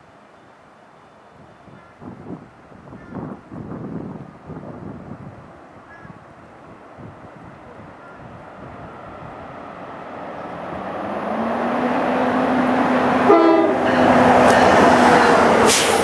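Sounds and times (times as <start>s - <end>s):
diesel train rumble: 6.5s - 16.0s
train horn blast: 12.4s - 15.7s.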